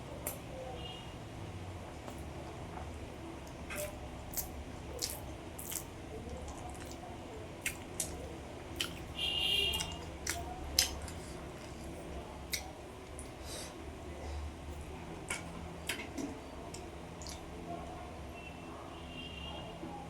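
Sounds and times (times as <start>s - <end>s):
wet chewing mouth clicks: 8.8s - 9.0s, 17.2s - 17.5s.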